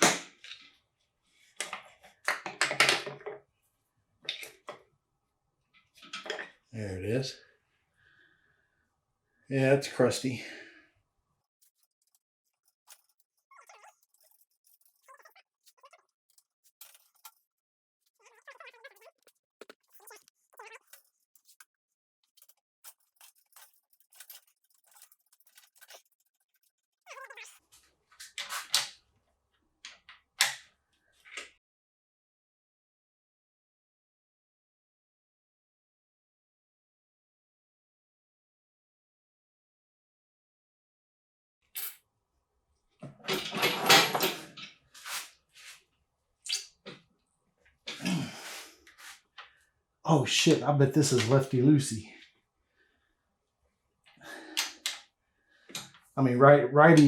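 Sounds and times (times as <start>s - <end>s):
hand tools clicking and scraping: 11.6s - 27.6s, 43.1s - 45.2s
metal tools clanking and scraping: 43.1s - 44.7s.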